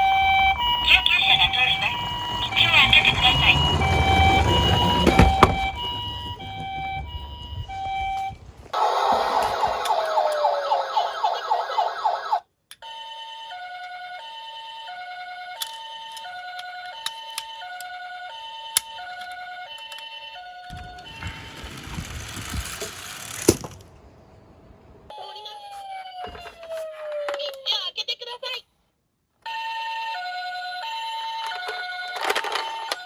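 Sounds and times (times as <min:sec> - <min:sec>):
rapidly warbling siren: 0:00.0 - 0:08.1, 0:08.8 - 0:12.4
two-tone toy siren: 0:00.0 - 0:23.2, 0:25.1 - 0:27.9, 0:29.4 - 0:33.0.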